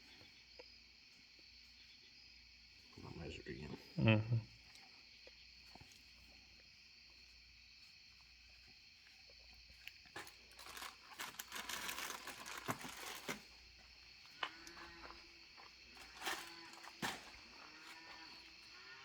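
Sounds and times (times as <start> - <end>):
rustling and crinkling: 4.6 - 19.0.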